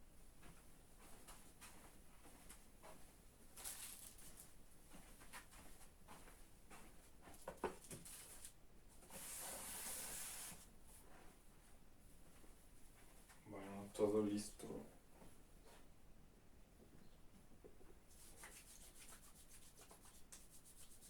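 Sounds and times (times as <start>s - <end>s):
hiss-like rustle: 9.0s - 10.7s.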